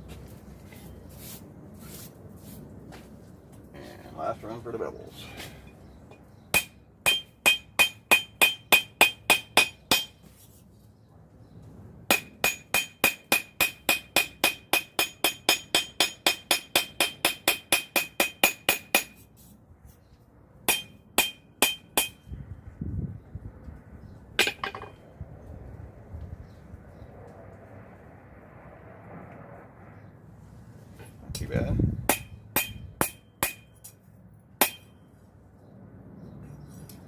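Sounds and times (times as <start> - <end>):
hammer ringing on hot steel: 6.5 - 10.2, 12.1 - 19.2, 20.7 - 22.3, 32.1 - 33.9, 34.6 - 35.0.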